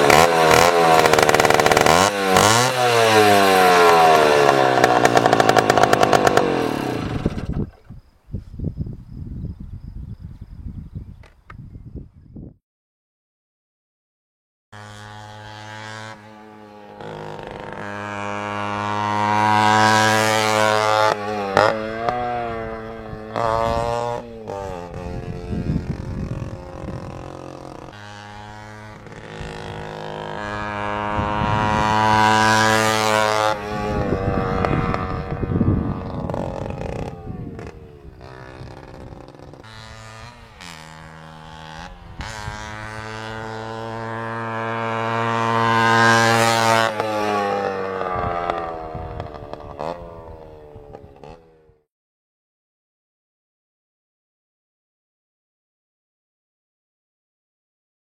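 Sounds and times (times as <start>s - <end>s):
moped engine running: 0.0s - 7.8s, 14.8s - 51.9s.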